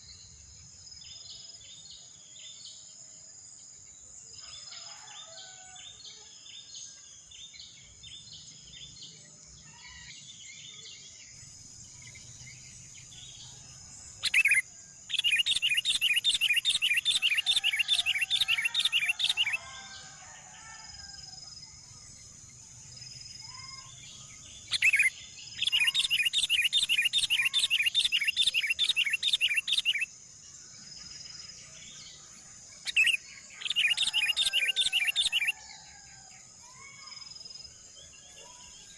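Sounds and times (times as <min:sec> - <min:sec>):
nestlings chirping: 0:14.2 - 0:19.6, 0:24.6 - 0:30.1.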